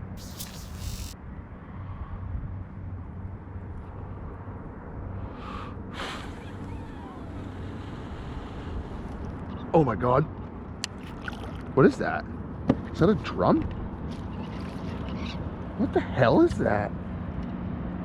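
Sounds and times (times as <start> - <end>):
brief hissing bursts: 0.0 - 1.2
wind rumbling on microphone: 0.0 - 15.9.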